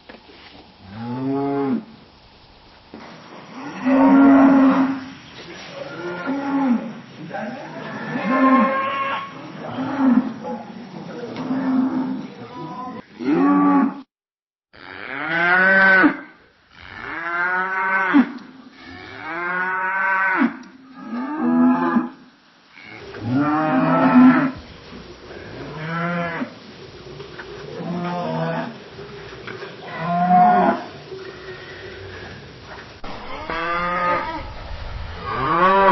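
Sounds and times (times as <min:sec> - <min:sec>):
cows mooing: 0:03.6 - 0:05.1, 0:05.7 - 0:10.4, 0:22.8 - 0:24.6, 0:27.4 - 0:34.6.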